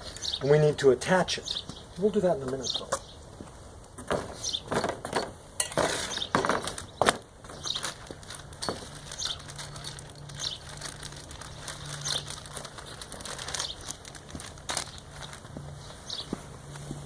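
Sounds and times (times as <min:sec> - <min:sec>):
packaging rustling: 0:06.3 - 0:15.6.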